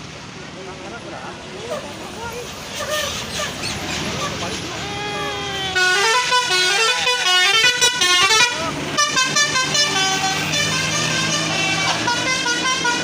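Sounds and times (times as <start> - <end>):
multi-tone air horn melody: 5.7 - 13.0.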